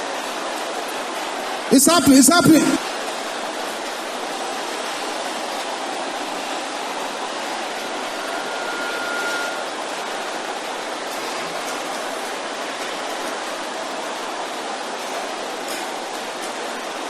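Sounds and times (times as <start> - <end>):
congregation praying aloud: 1.7 - 2.8.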